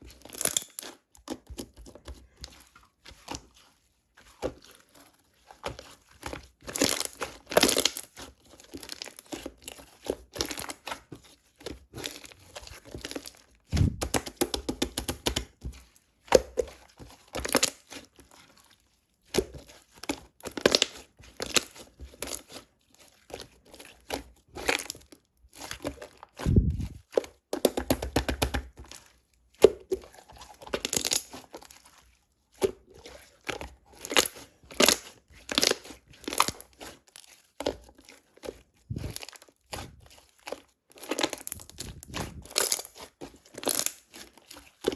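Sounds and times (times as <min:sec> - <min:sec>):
low thuds: 0:13.7 - 0:14.0, 0:26.4 - 0:27.0
plastic crinkling and tearing: 0:29.9 - 0:31.8, 0:33.4 - 0:44.9.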